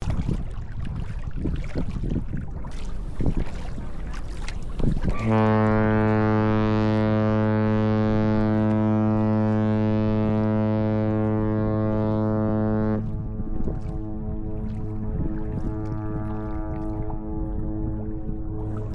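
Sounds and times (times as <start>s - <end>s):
water noise: 0.0s - 18.9s
wind: 0.0s - 18.9s
ship horn blast: 5.1s - 18.9s.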